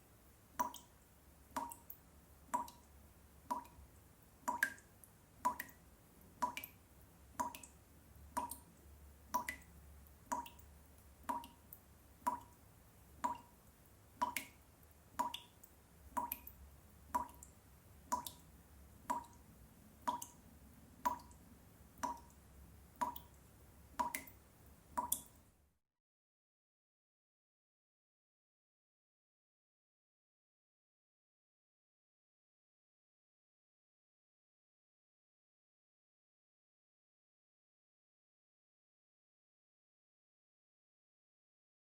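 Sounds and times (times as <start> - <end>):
water dripping from tap: 0.5 - 25.5.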